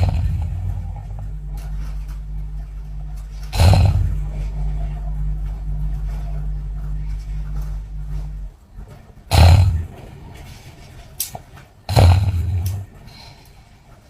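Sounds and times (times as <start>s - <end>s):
woman snoring: 0.0s - 1.1s, 3.5s - 4.6s, 9.3s - 9.9s, 11.9s - 12.8s
steady low hum: 0.0s - 14.0s.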